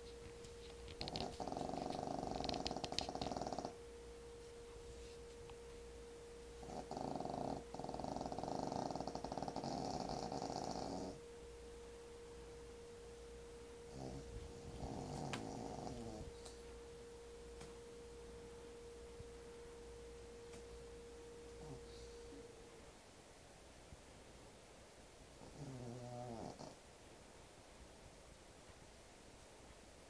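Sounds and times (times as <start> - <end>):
steady hum-like tone: 0.0 - 30.0
pet snoring: 1.0 - 3.8, 6.6 - 11.2, 13.9 - 16.6, 21.6 - 22.4, 25.4 - 26.8.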